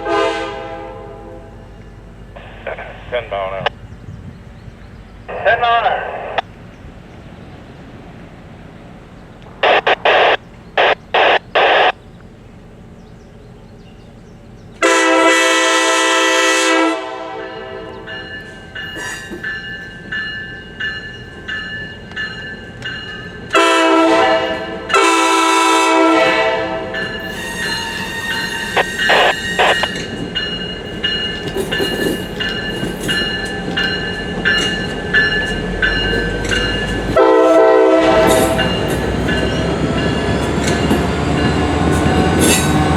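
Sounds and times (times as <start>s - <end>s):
locomotive air horn blasts: 0.0s - 1.6s, 14.8s - 18.1s, 23.5s - 30.0s, 37.2s - 39.2s
rail noise from moving train: 0.0s - 42.9s.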